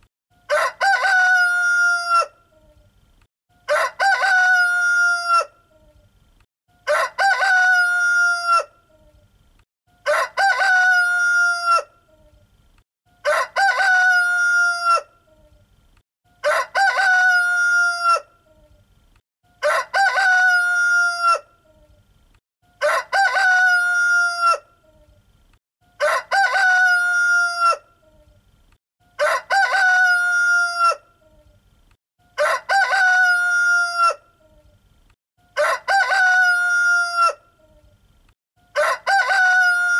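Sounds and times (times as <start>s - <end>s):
rooster crowing: 0.5s - 2.4s, 3.6s - 5.6s, 6.8s - 8.8s, 10.0s - 11.9s, 13.2s - 15.1s, 16.4s - 18.3s, 19.6s - 21.5s, 22.8s - 24.7s, 25.9s - 27.9s, 29.1s - 31.1s, 32.3s - 34.3s, 35.4s - 37.5s, 38.7s - 39.9s.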